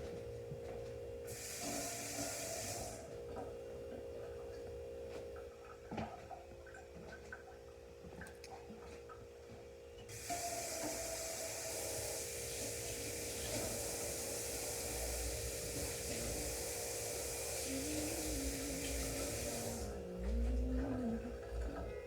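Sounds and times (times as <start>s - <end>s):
water running into a sink: 1.3s - 3.2s, 10.1s - 22.0s.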